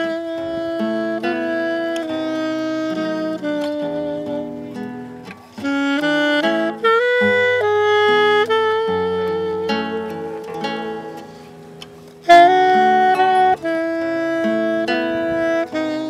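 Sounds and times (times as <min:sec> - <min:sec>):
saxophone playing slow melody: 0:00.0 - 0:16.0
chord accompaniment: 0:08.4 - 0:16.0.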